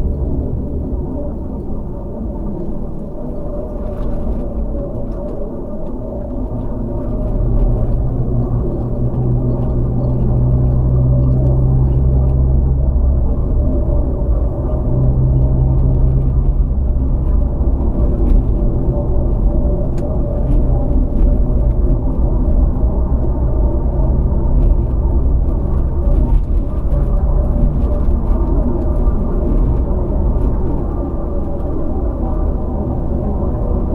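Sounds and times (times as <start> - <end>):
car engine and road rumble: 0.0 - 33.9.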